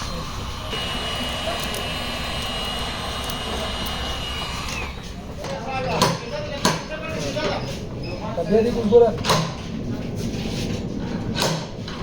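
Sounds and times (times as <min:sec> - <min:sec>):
power tool whining: 0:00.0 - 0:05.2
low workshop rumble: 0:00.0 - 0:12.0.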